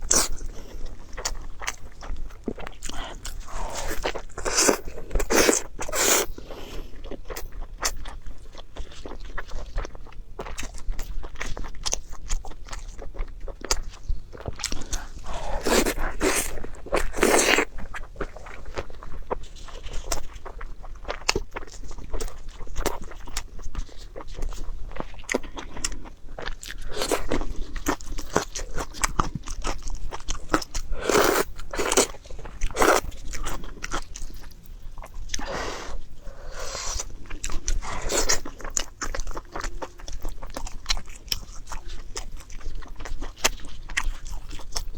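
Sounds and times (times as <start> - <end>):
person chewing food: 0.0 - 44.9
crunching bites: 14.6 - 17.7.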